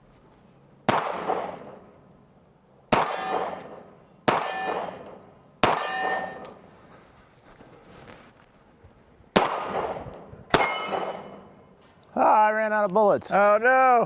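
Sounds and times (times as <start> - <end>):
pistol shots: 0.9 - 1.9, 2.9 - 6.6, 9.4 - 11.6
bullet ringing on steel target: 3.0 - 6.6, 10.5 - 11.7.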